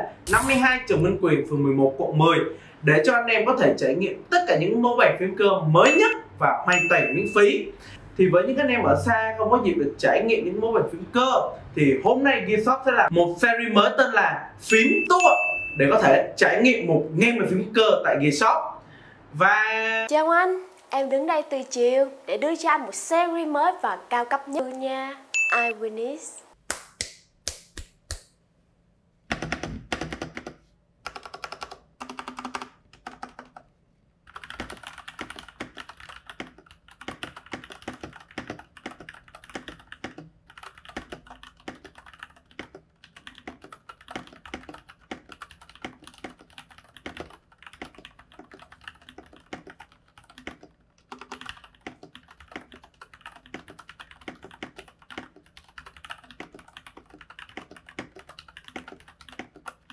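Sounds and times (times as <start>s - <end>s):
typing on mechanical keyboard: 29.3s - 33.7s, 34.3s - 59.9s.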